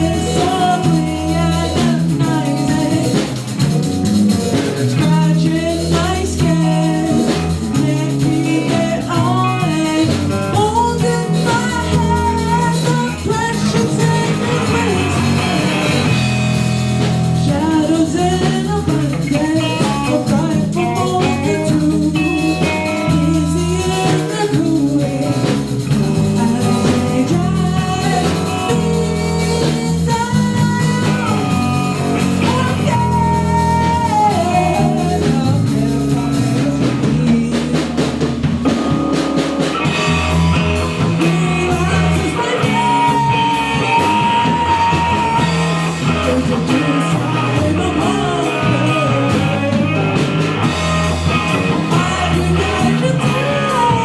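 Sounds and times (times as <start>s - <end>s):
electric guitar lead with bent notes: 0.0s - 54.0s
live rock band playing: 0.0s - 54.0s.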